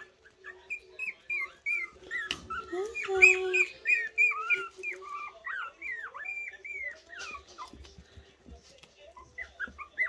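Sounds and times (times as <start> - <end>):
puppies whimpering and squeaking: 0.0 - 10.0.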